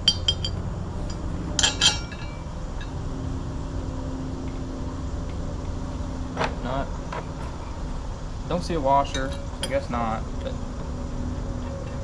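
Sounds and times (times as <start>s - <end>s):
metal bolts clinking: 0.0s - 3.0s, 9.0s - 10.1s
steady low hum: 0.0s - 12.0s.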